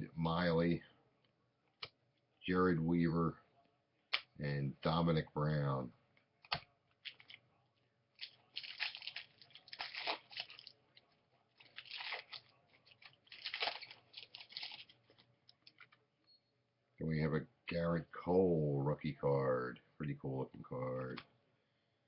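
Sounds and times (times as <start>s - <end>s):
trading cards rustling and scraping: 11.6s - 16.0s.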